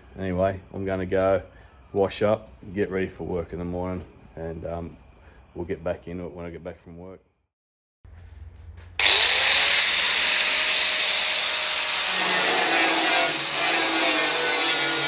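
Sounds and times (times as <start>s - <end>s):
electric power tool motor: 9.0s - 15.0s
grinding on sheet metal: 9.0s - 15.0s.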